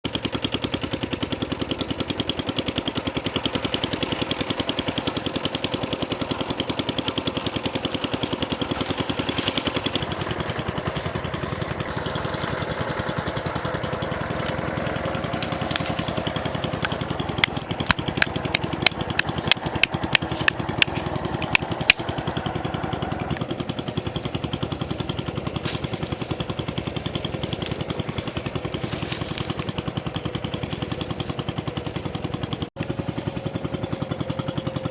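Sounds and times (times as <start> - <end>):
small engine chugging: 0.0 - 34.9
sharp clicks: 15.3 - 22.1.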